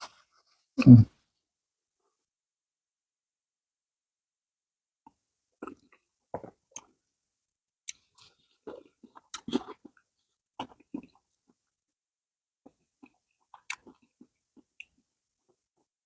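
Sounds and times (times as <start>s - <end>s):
wet chewing and lip-smacking: 7.9s - 11.6s, 12.6s - 15.6s.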